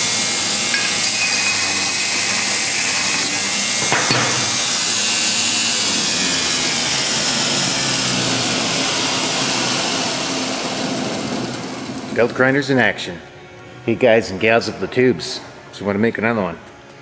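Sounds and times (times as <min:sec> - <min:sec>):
belt grinder hissing: 0:00.0 - 0:12.0.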